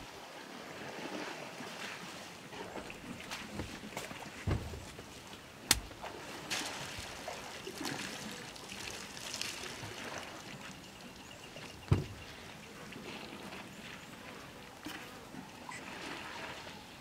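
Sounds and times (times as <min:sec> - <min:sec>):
water splashing and trickling: 0:00.0 - 0:17.0
low thump: 0:04.5 - 0:04.8.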